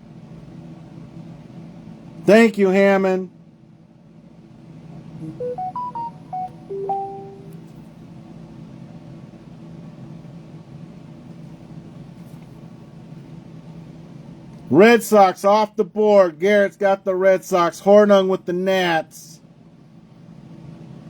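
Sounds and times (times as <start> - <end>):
electronic chime jingle: 5.2 - 7.6.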